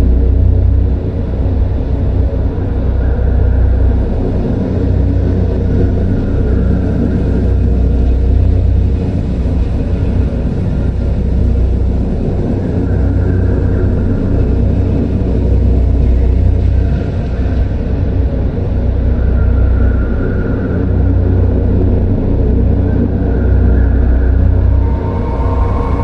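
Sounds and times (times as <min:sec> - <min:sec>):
dark ambient wash: 0:00.0 - 0:26.0
deep low rumbling drone: 0:00.0 - 0:26.0
faint higher tone: 0:23.3 - 0:26.0.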